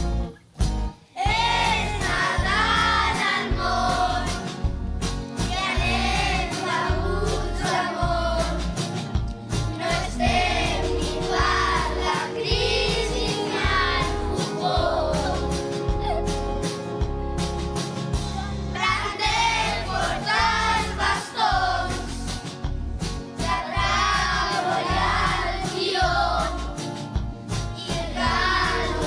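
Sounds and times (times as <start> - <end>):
instrumental accompaniment: 0.0 - 29.0
children singing together: 1.2 - 4.5, 5.4 - 8.8, 9.7 - 16.2, 18.8 - 22.1, 23.4 - 26.8, 27.8 - 29.0.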